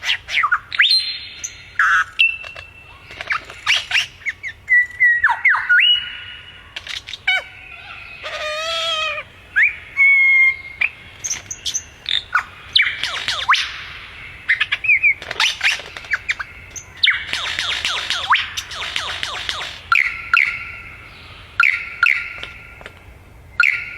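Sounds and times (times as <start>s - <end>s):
wavering nasal bird squawk: 5.2s - 20.9s.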